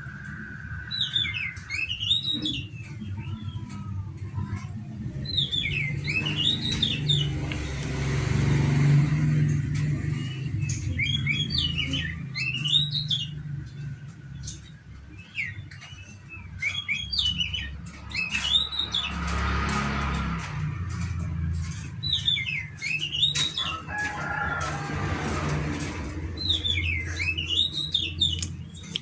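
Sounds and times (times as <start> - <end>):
bird whistling phrases: 0.0 - 3.6.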